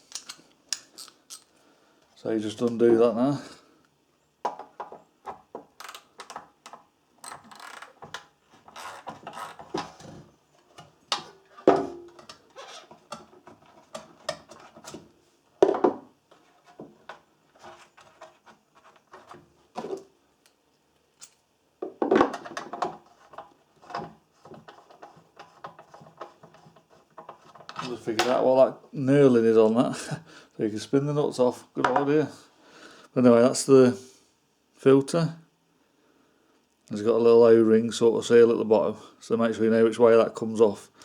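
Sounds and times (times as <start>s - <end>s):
metal parts clinking: 0.0s - 1.5s.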